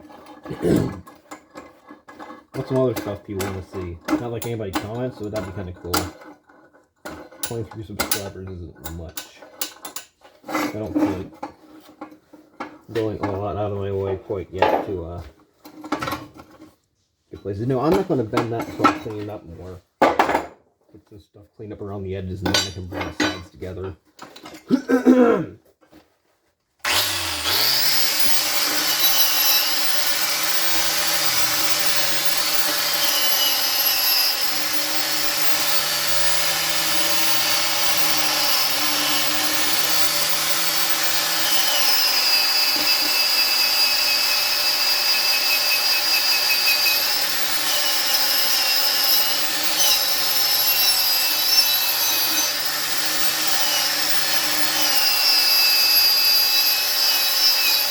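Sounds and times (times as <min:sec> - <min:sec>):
angle grinder on steel: 0:00.0 - 0:06.4, 0:07.1 - 0:10.0, 0:12.9 - 0:15.0, 0:26.8 - 0:57.9.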